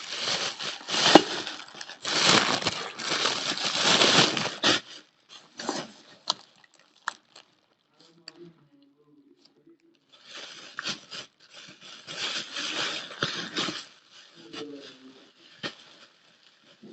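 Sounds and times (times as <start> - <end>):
chewing chalk crunching: 6.2 - 7.8.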